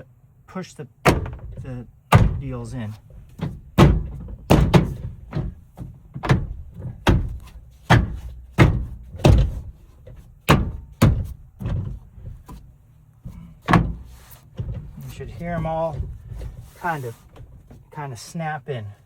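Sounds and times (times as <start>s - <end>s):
hand thumping plastic door panel: 1.0s - 12.7s, 13.3s - 16.6s.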